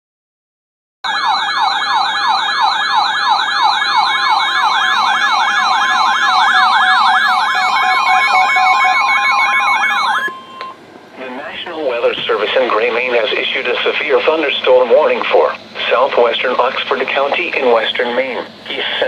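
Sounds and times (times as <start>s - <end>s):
warbling alarm siren: 1.0s - 11.7s
steady attention tone: 5.7s - 19.0s.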